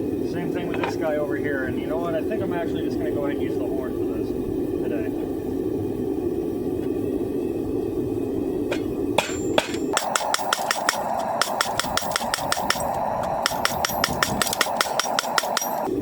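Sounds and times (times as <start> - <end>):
steady rushing noise: 0.0 - 16.0
hammer striking steel on anvil: 8.7 - 15.9.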